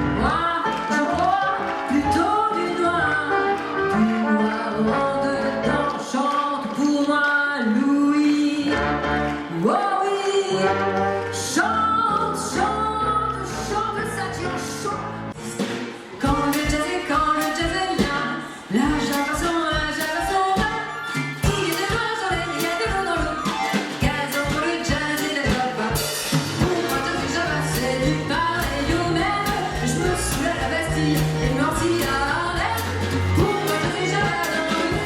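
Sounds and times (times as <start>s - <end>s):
live band playing: 0.0s - 7.1s, 8.2s - 35.0s
person singing: 15.4s - 35.0s
steady drum beat: 15.5s - 35.0s
bass line: 26.3s - 35.0s.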